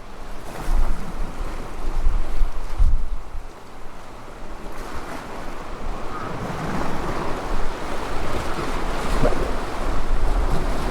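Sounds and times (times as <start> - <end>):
wind on the microphone: 0.3 - 10.9
sea waves washing: 5.2 - 10.9.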